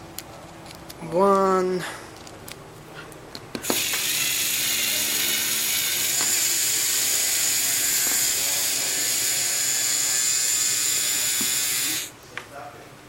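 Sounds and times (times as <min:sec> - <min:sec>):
electric screwdriver whining: 0:03.6 - 0:12.1.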